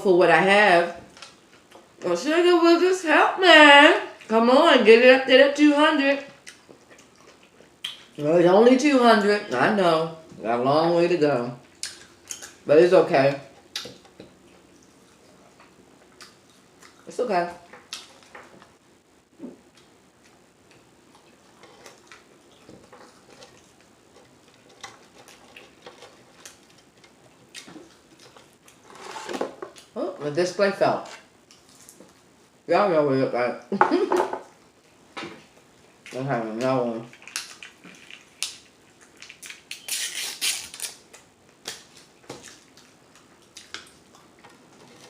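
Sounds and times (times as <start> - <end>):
person chewing food: 6.3 - 8.3, 11.6 - 12.6, 13.6 - 18.8, 19.6 - 28.9, 40.9 - 45.0.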